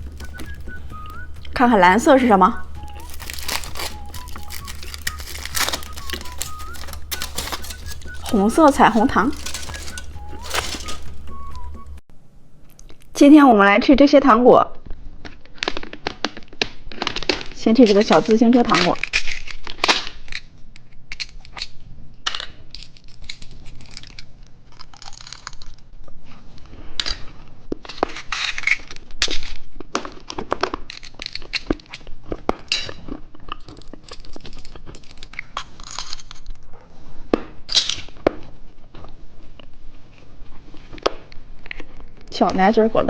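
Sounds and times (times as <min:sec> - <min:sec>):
candy packaging crinkling: 0:00.0 - 0:12.0, 0:22.3 - 0:25.9, 0:27.8 - 0:36.6
crunching and chewing candy: 0:00.0 - 0:12.0, 0:15.1 - 0:17.6, 0:18.8 - 0:42.3.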